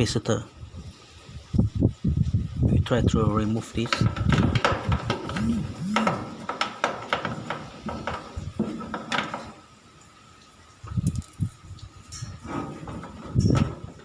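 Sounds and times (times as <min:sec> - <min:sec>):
dull thumps: 0:05.2 - 0:06.6.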